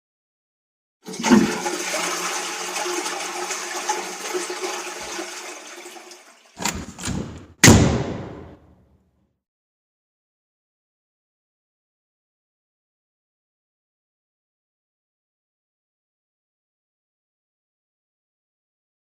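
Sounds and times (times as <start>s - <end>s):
short sharp water bursts: 1.0s - 6.6s
toilet flushing: 1.0s - 7.4s.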